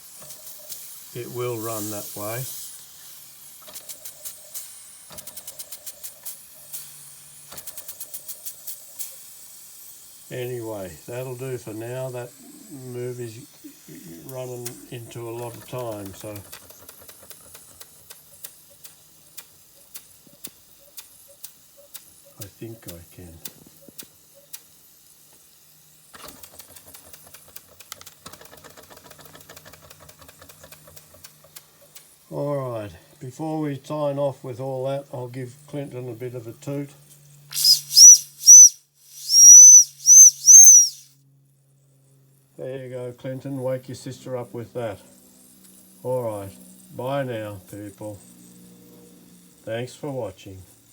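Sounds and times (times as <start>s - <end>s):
steam hissing: 0.0s - 23.4s, 37.5s - 41.1s
toy steam engine exhaust puffs: 0.0s - 33.3s, 37.5s - 41.1s.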